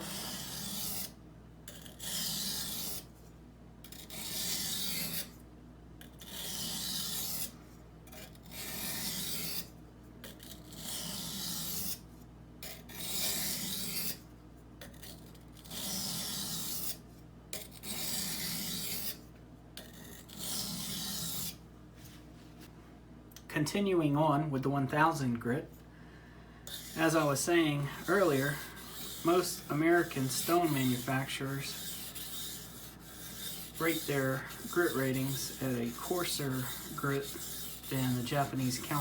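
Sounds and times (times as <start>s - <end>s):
knife rasping on whetstone: 0.0s - 3.1s, 3.8s - 5.4s, 6.1s - 12.0s, 12.6s - 14.2s, 14.9s - 17.0s, 17.6s - 19.2s, 19.8s - 21.6s, 26.7s - 39.0s.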